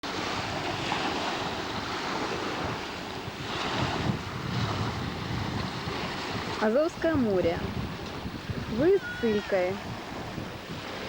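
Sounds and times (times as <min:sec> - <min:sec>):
surf washing at shore: 0:00.0 - 0:11.0
wind buffeting microphone: 0:00.0 - 0:11.0.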